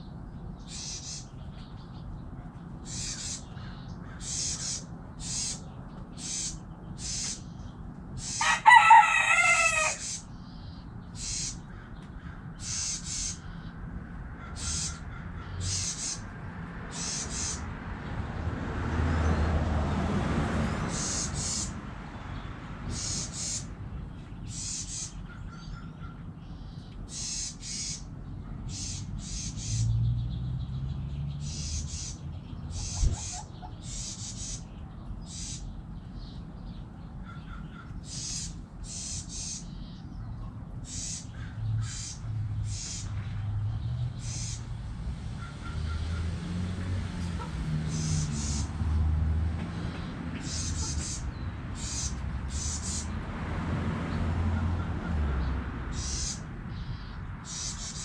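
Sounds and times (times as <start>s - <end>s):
rooster crowing: 8.4s - 10.2s.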